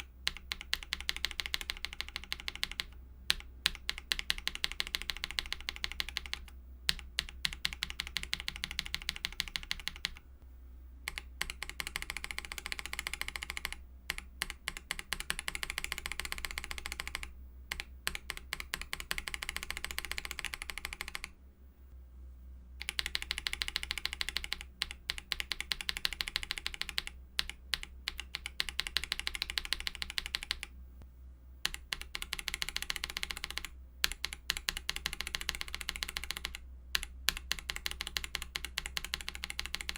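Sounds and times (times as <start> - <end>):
typing on mechanical keyboard: 0.0 - 10.2, 11.1 - 21.3, 22.8 - 30.8, 31.6 - 39.9
faint low hum: 0.0 - 39.9.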